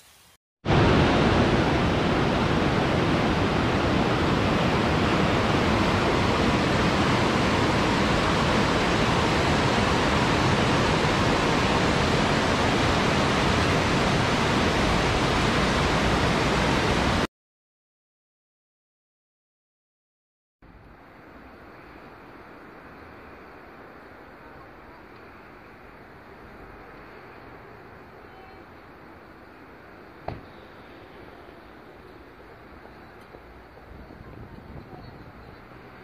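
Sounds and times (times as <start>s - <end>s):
rushing water: 0.7s - 17.3s.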